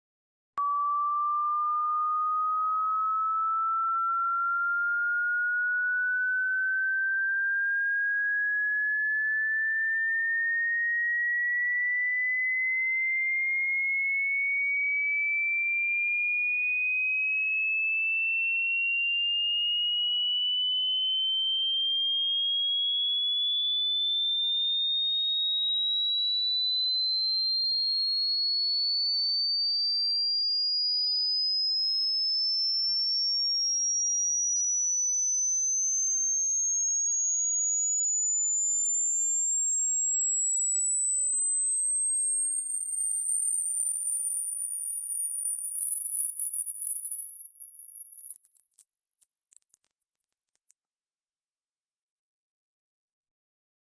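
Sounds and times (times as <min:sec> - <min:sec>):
rising electronic test tone: 0:00.6 - 0:11.6, 0:33.0 - 0:51.4.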